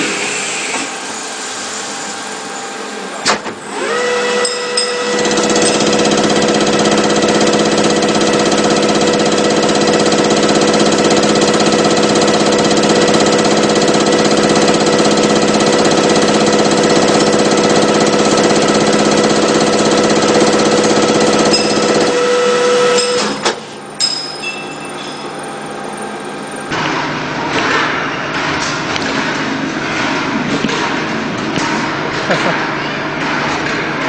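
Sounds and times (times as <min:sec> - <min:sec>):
machine tool humming: 0:00.0 - 0:34.0.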